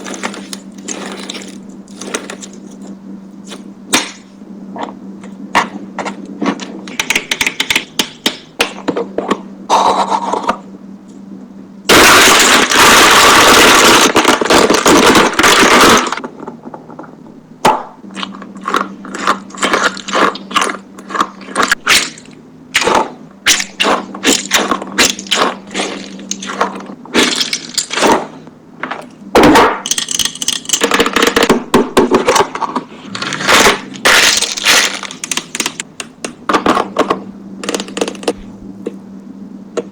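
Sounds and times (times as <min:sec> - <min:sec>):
loud plastic crunching: 0:00.0 - 0:04.3, 0:11.9 - 0:17.0, 0:17.6 - 0:38.4
low hum: 0:00.0 - 0:39.9.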